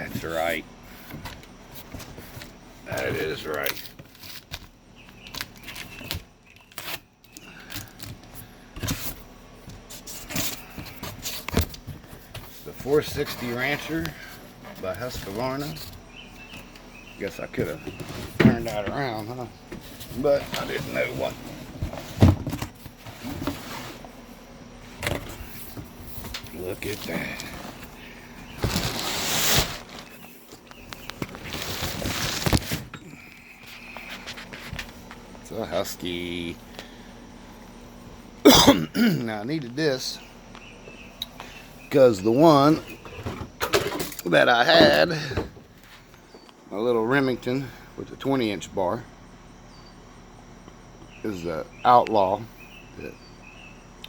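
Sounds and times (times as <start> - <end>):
cardboard packaging rustling: 25.2 - 32.9.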